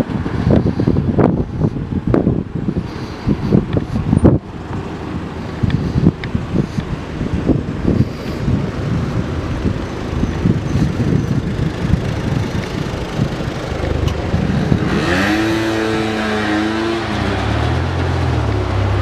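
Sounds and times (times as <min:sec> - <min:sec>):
vehicle engine accelerating: 0:00.0 - 0:19.0
wind buffeting microphone: 0:00.0 - 0:19.0.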